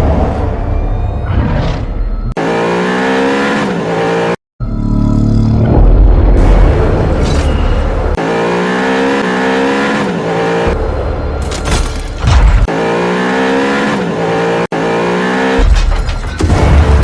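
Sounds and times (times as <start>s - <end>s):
car engine revving: 2.3s - 7.2s, 7.8s - 16.8s.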